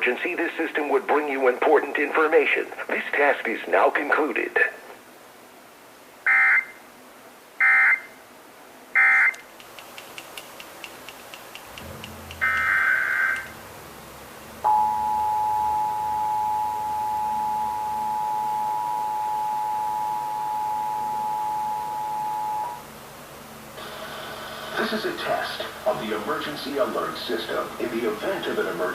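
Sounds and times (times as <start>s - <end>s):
digital data tone screech: 9.0s - 9.4s, 12.4s - 13.6s
two-tone attention signal: 11.8s - 13.6s, 14.6s - 22.8s.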